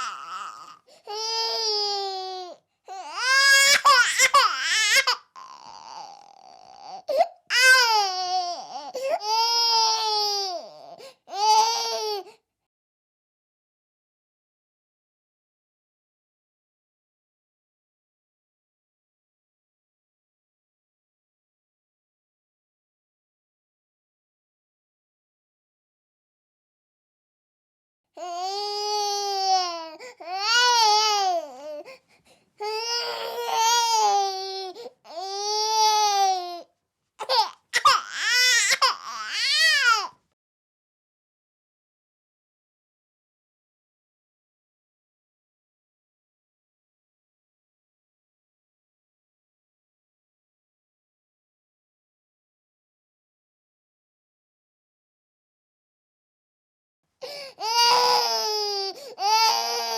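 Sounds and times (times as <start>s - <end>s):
baby crying: 0.0s - 12.3s, 28.2s - 31.9s, 32.6s - 40.2s, 57.2s - 59.9s.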